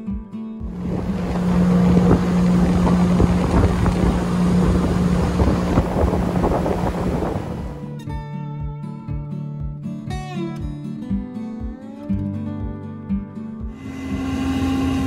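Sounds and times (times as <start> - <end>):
engine droning: 0.6 - 7.8, 13.7 - 15.0
wind buffeting microphone: 0.6 - 7.8.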